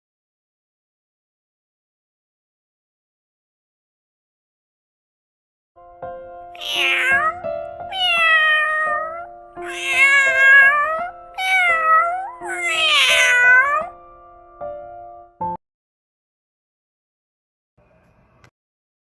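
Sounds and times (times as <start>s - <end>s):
background music: 5.8s - 15.6s
cat meowing: 6.6s - 14.0s.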